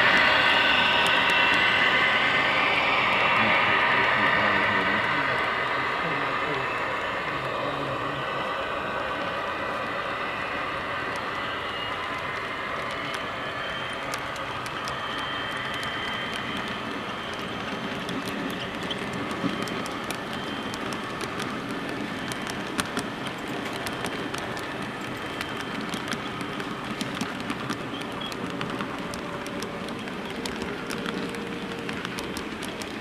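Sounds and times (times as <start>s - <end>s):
model train running on track: 0.0s - 33.0s
wheels clicking over rail joints: 14.0s - 33.0s.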